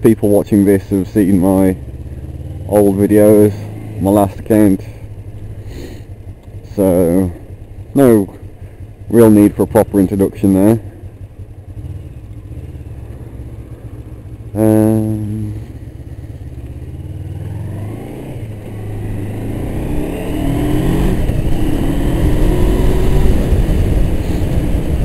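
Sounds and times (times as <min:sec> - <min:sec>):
motorcycle engine: 0:00.0 - 0:25.0
wind noise: 0:19.8 - 0:25.0.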